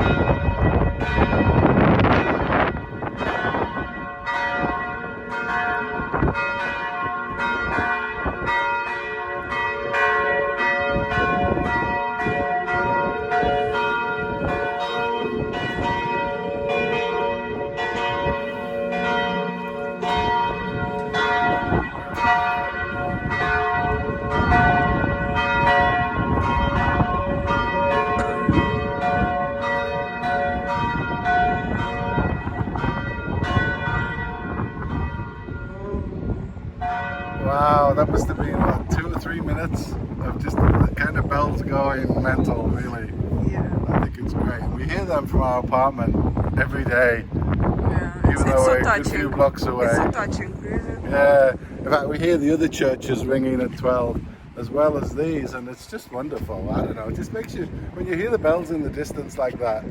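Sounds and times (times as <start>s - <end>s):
church bells ringing: 0.0s - 40.8s.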